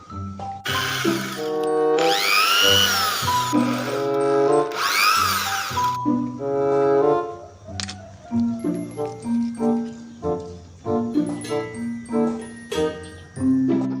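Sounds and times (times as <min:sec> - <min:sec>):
bouncy background melody: 0:00.0 - 0:14.0
electric drill motor whirring: 0:00.6 - 0:06.0.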